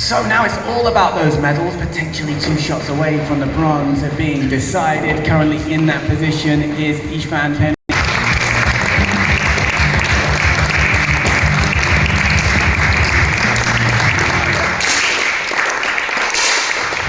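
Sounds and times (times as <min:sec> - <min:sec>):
arena music with pounding bass: 0:07.6 - 0:14.9
spectators applauding: 0:07.9 - 0:17.0.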